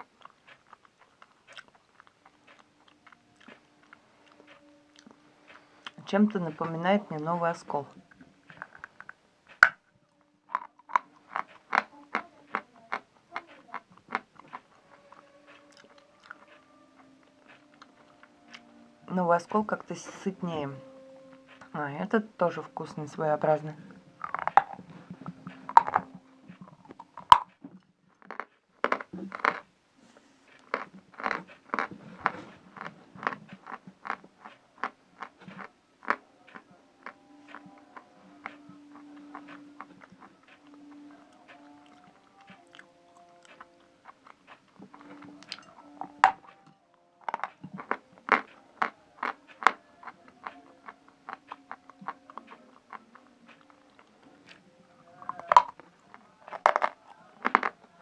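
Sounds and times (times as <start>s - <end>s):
person chewing chalk crunches: 0.0s - 6.0s, 10.5s - 18.7s, 24.2s - 29.6s, 30.5s - 46.5s, 47.2s - 57.8s.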